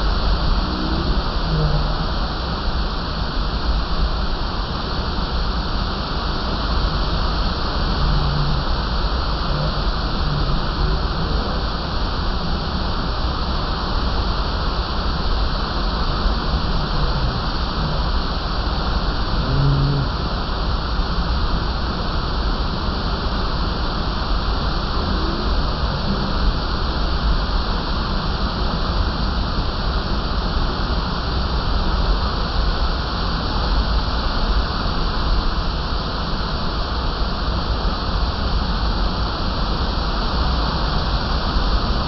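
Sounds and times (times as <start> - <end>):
waterfall roaring: 0.0 - 42.0
short low-pitched sounds: 19.1 - 20.4.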